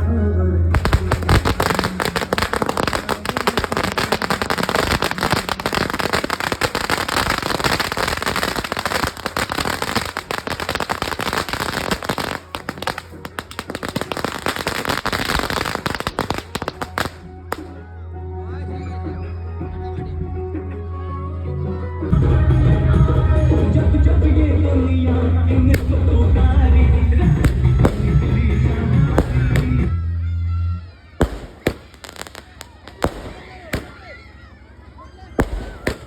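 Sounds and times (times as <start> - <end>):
fireworks bangs and crackles: 0.7 - 17.9, 25.4 - 36.0.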